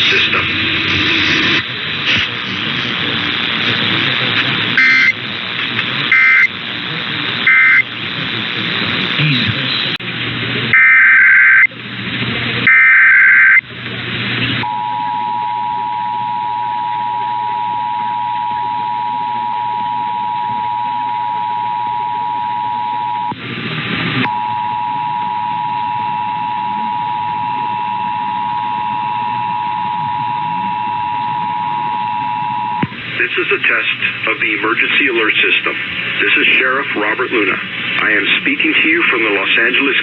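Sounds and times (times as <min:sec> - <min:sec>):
digital header data burst: 0:00.0 - 0:09.9
radio static: 0:00.0 - 0:40.0
two-tone attention signal: 0:04.8 - 0:05.2, 0:06.1 - 0:06.5, 0:07.5 - 0:07.8.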